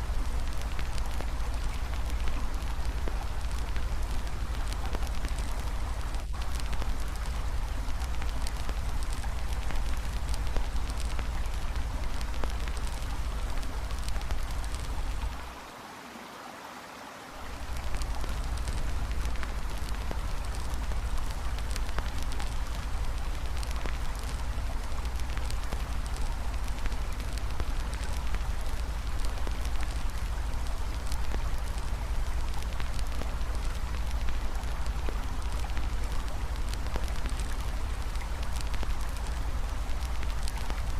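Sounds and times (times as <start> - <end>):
campfire crackling and popping: 0.0 - 15.5, 17.6 - 40.9
river water rushing: 15.4 - 17.7.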